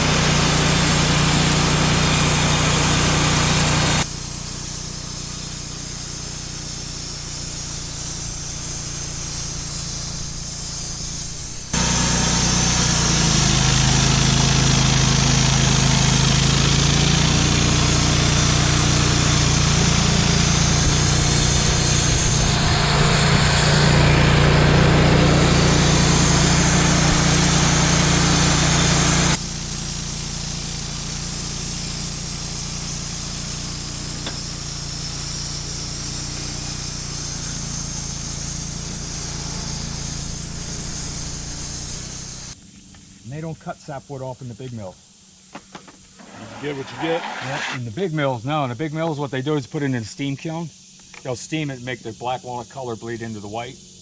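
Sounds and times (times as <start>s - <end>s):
sawmill engine hum: 0.0s - 5.0s, 7.0s - 42.6s, 46.1s - 47.9s
saw blade cutting log hiss: 0.0s - 42.6s, 45.9s - 54.0s.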